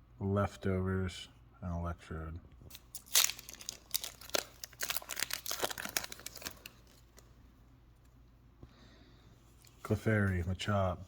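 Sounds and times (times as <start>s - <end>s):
foil wrapper crinkling: 2.7s - 7.3s.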